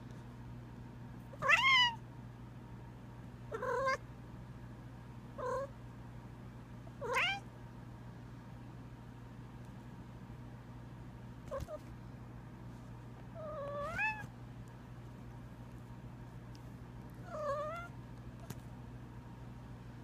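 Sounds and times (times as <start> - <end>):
cat chirping: 1.4 - 2.0, 7.0 - 7.4, 11.5 - 11.8, 13.4 - 14.3, 17.2 - 17.9.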